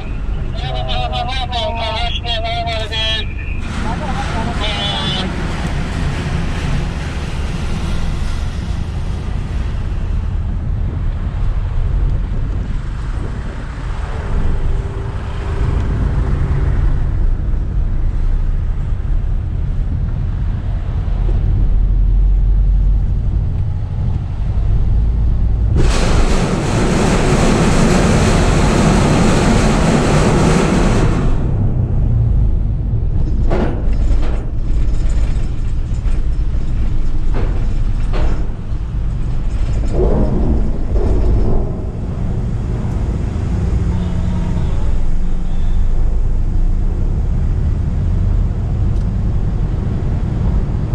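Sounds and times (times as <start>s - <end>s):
loud hissing rush: 0.0s - 9.4s, 25.7s - 31.6s
car engine rumbling: 0.0s - 50.9s.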